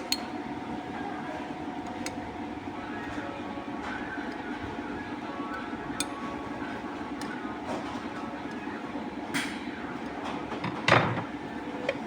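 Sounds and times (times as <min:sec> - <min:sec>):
machine hum with held tones: 0:00.0 - 0:10.4.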